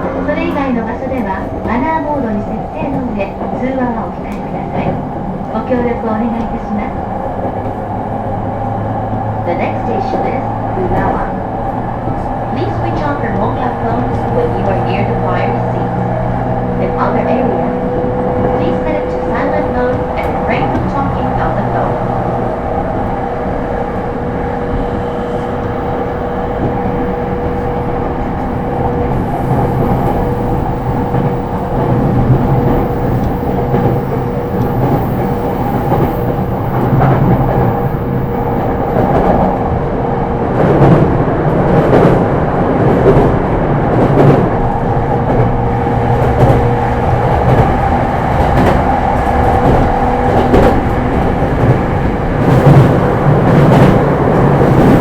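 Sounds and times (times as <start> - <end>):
electric train rumble and whine: 0.0 - 55.0.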